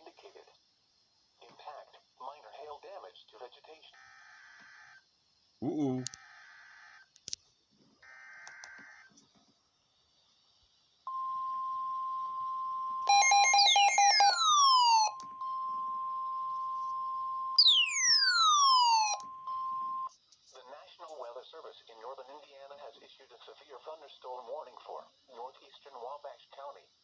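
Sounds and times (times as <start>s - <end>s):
rapid pulsing beeps: 11.1s - 20.1s
steady warning alarm tone: 11.1s - 20.1s
warbling digital header burst: 13.1s - 15.2s, 17.6s - 20.0s.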